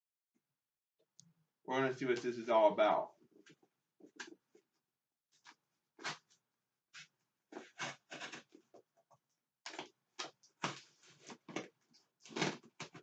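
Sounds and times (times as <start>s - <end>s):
package rustling and scraping: 7.6s - 8.7s.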